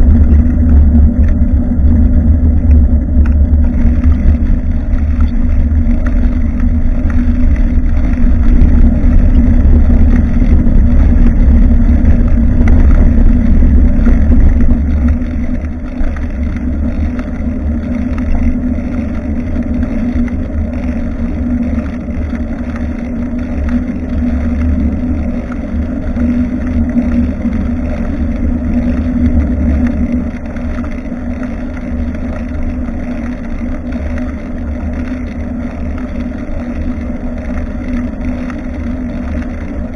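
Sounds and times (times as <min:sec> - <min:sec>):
road rumble: 0:00.0 - 0:39.9
wind buffeting microphone: 0:00.0 - 0:39.9.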